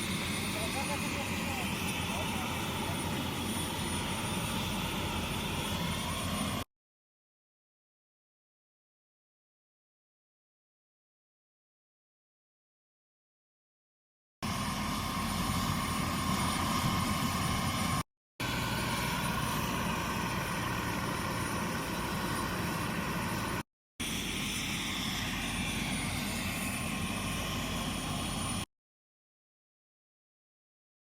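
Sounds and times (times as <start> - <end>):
helicopter engine and rotor: 0.0 - 6.7, 14.4 - 28.7.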